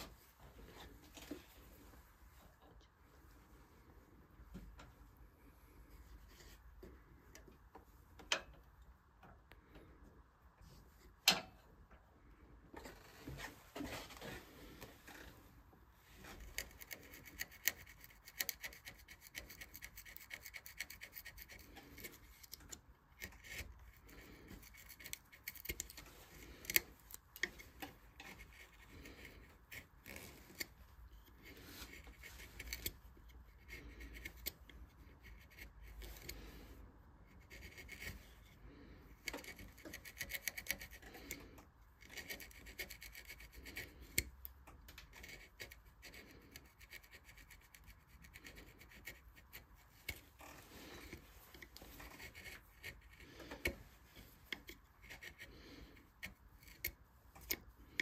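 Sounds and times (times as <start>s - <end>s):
carving tool scraping wood: 12.8s - 58.0s.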